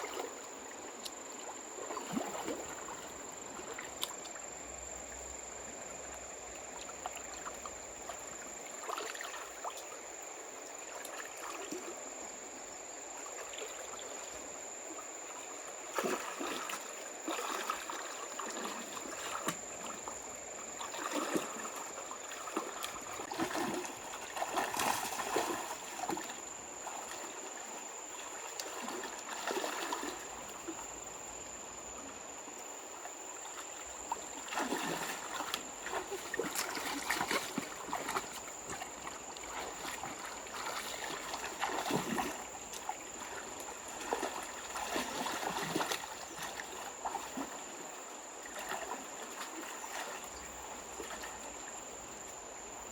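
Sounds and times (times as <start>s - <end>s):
water splashing and sloshing: 0.0s - 52.9s
water trickling: 13.1s - 31.5s, 32.6s - 51.8s.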